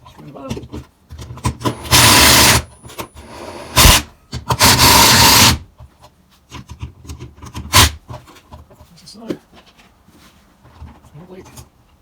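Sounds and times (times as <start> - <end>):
cordless drill driving screws: 1.6 - 5.6.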